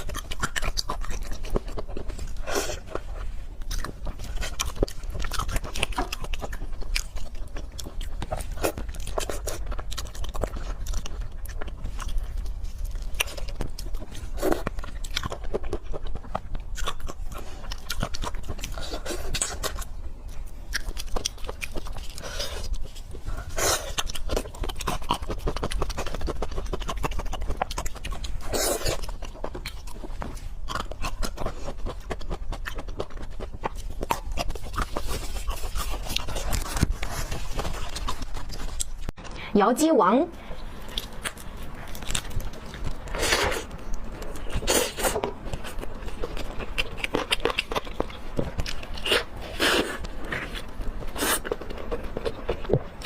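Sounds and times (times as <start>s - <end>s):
wet chewing: 0.0s - 39.3s, 40.4s - 53.0s
crunchy bites: 40.7s - 53.0s.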